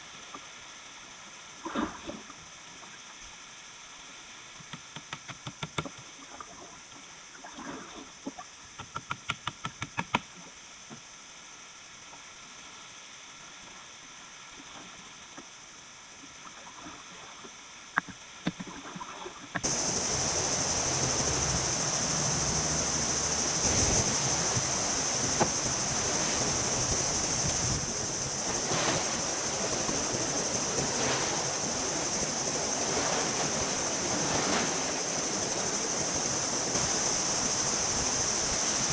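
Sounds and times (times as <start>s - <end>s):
sea waves breaking on shore: 19.6s - 38.9s.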